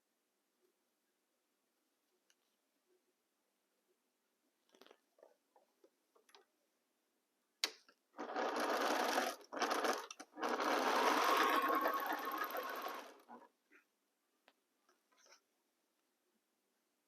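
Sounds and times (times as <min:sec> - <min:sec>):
sewing machine stitching: 0:08.2 - 0:13.5.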